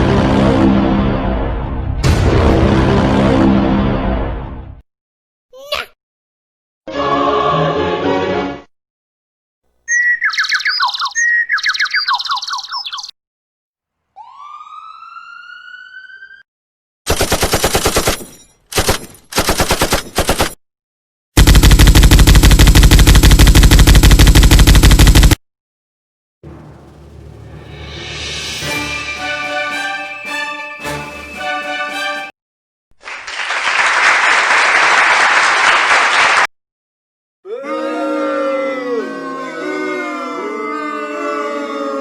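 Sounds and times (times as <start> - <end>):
chirp dropping in pitch: 9.9 - 13.2, 14.2 - 16.4
tone gliding upward: 14.2 - 16.4
loud rapid rattle: 21.4 - 25.4, 26.4 - 28.6
stuttering rattle: 26.4 - 28.2
noisy blast: 26.4 - 28.9.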